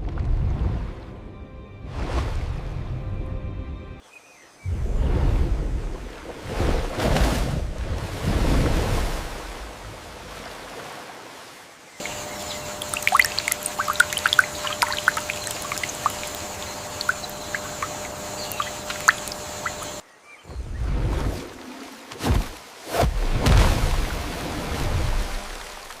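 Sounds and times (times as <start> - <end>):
faint hum: 12.0 - 20.0
water trickling and dripping: 12.0 - 20.0.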